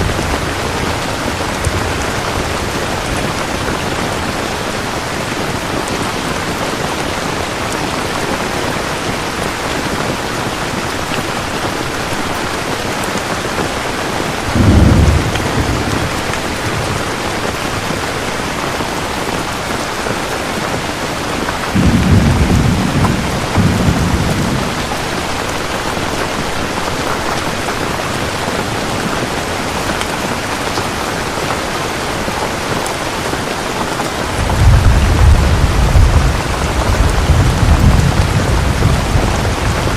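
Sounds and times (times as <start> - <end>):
low rumbles of thunder: 0.0 - 4.4, 14.4 - 17.6, 21.7 - 25.5, 34.2 - 39.9
steady falling rain: 0.0 - 39.9.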